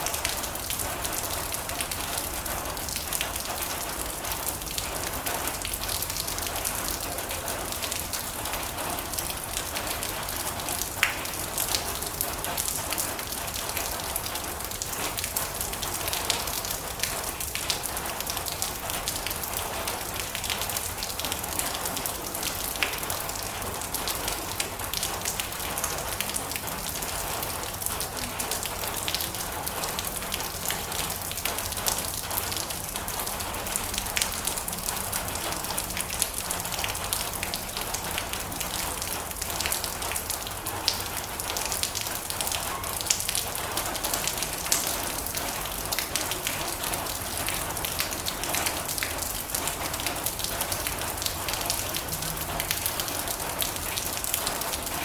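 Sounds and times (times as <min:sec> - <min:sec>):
rain drumming on a metal roof: 0:00.0 - 0:55.0.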